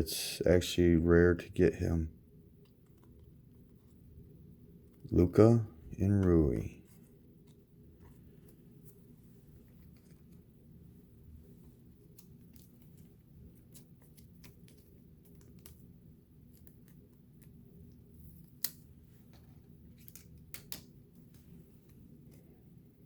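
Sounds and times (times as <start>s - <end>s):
steady low hum: 0.0s - 23.0s
trading cards flicking and sliding: 6.2s - 10.5s, 11.7s - 22.5s.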